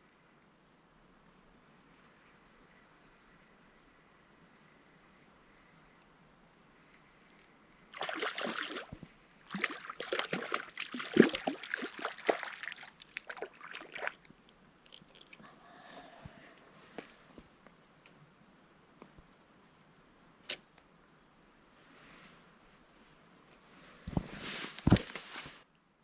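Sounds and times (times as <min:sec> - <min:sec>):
water splashing and sloshing: 0:07.9 - 0:14.3
water dripping: 0:07.9 - 0:15.4.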